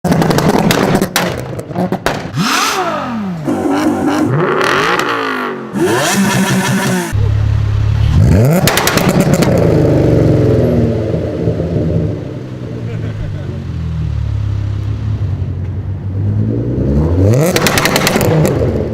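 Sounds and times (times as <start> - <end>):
exhaust pops and bangs: 0.0 - 2.4, 8.5 - 9.7, 17.5 - 18.7
car engine revving: 1.7 - 18.9.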